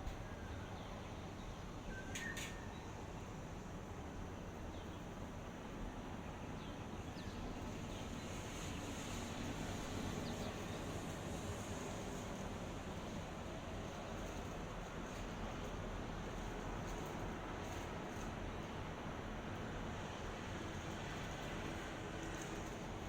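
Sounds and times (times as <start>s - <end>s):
low outdoor rumble and hiss: 0.0s - 23.0s
faint bird chirps: 1.8s - 3.0s.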